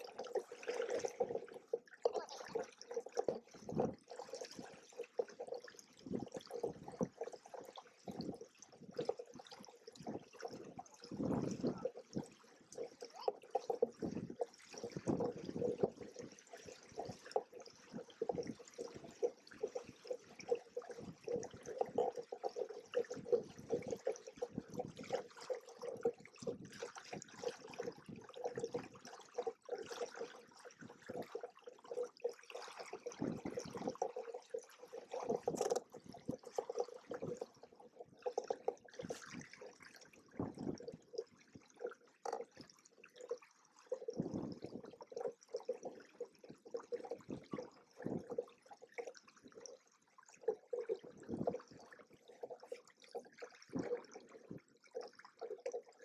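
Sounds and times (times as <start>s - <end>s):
water splashing against hulls: 0.0s - 56.0s.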